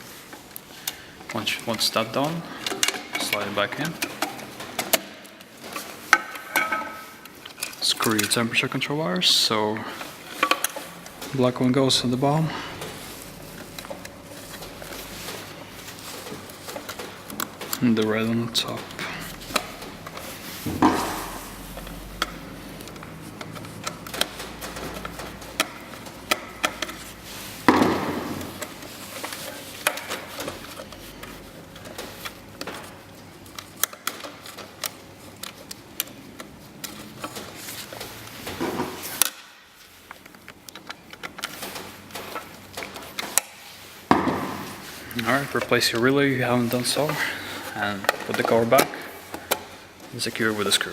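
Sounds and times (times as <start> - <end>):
brushing scrapes: 9.9 - 33.0, 43.6 - 49.3
screwdriver and metal parts clicking: 28.4 - 38.1.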